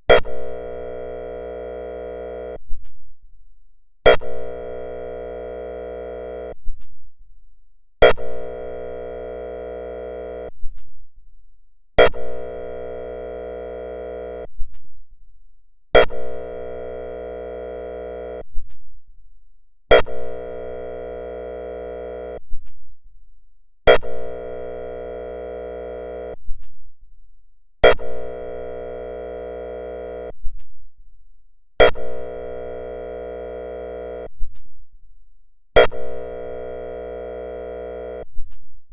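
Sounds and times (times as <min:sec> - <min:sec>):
buzzy siren horn blasts: 0:00.1 - 0:02.6, 0:04.0 - 0:06.6, 0:08.0 - 0:10.5, 0:12.0 - 0:14.5, 0:16.0 - 0:18.4, 0:19.9 - 0:22.4, 0:23.9 - 0:26.4, 0:27.8 - 0:30.4, 0:31.8 - 0:34.3, 0:35.8 - 0:38.3.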